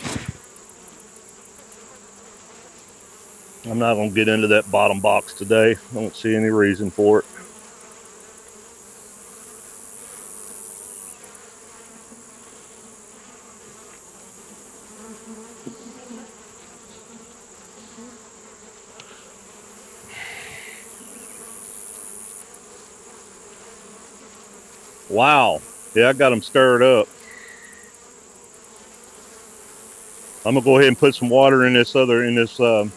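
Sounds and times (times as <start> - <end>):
high hiss: 0.0 - 1.6, 19.8 - 22.5, 24.6 - 28.6, 29.3 - 32.9
honeybees buzzing: 0.0 - 32.9.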